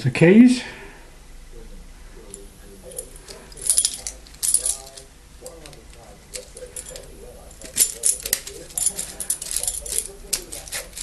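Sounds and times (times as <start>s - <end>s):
metal keys jingling: 2.8s - 11.0s.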